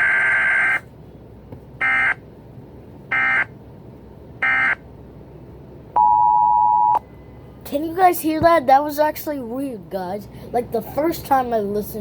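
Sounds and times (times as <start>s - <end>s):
electronic alarm buzzes: 4.4s - 4.8s.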